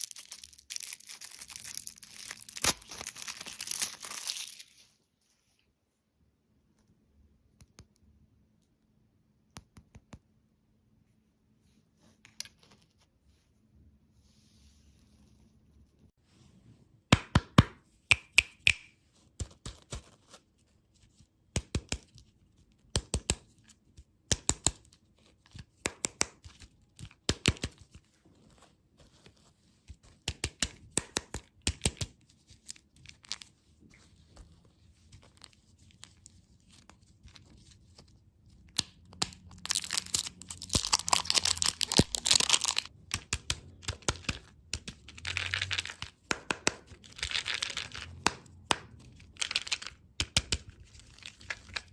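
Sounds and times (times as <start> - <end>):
candy crunching: 0.0 - 4.8, 39.2 - 46.2
wrapper crinkling and tearing: 0.0 - 5.0, 39.3 - 42.9, 45.0 - 46.2.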